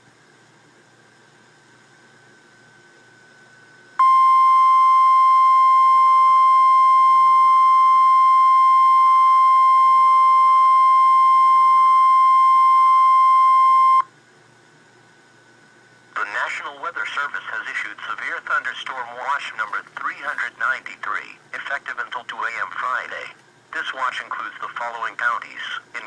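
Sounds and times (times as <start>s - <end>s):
steady warning beep: 4.0s - 14.1s.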